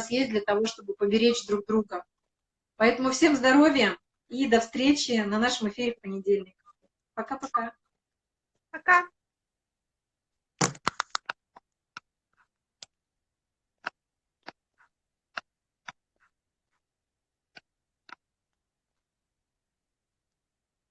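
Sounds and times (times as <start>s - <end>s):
sharp clicks and taps: 10.6s - 13.0s, 13.8s - 16.4s.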